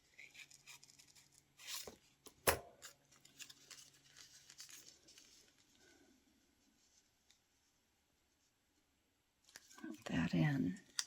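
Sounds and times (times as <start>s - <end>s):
paper rustle: 0.0s - 2.2s, 2.8s - 6.0s.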